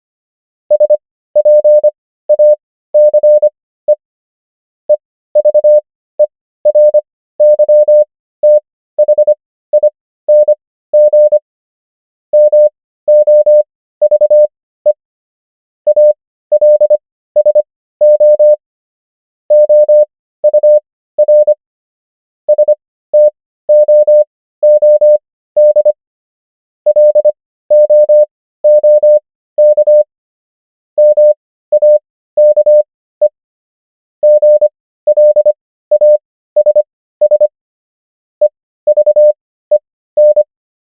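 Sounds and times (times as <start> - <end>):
morse code beeps: 0.7 - 4.0, 5.4 - 11.4, 12.4 - 14.5, 15.9 - 18.6, 19.5 - 21.6, 22.5 - 26.0, 26.9 - 30.1, 31.0 - 33.4, 34.2 - 37.5, 38.4 - 40.5.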